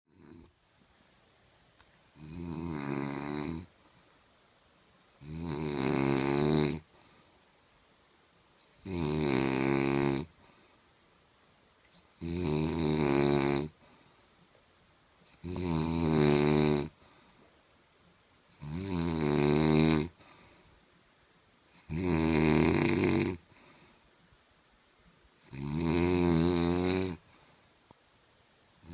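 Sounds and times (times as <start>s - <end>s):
person snoring loudly: 2.2s - 3.7s, 5.2s - 6.9s, 8.8s - 10.3s, 12.2s - 13.8s, 15.4s - 17.0s, 18.6s - 20.2s, 21.8s - 23.5s, 25.5s - 27.2s.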